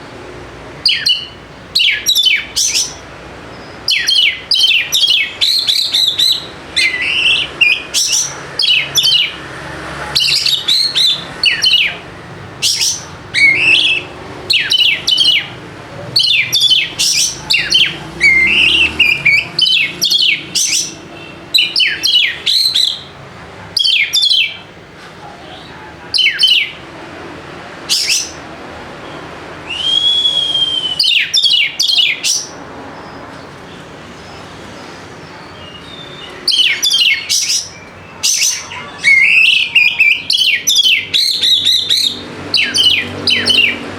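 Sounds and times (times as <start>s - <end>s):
bird singing chirps and whistles: 0.8s - 9.4s, 10.2s - 12.0s, 12.6s - 15.6s, 16.2s - 23.1s, 23.8s - 24.6s, 26.2s - 26.8s, 27.9s - 28.4s, 29.6s - 33.2s, 35.2s - 43.8s.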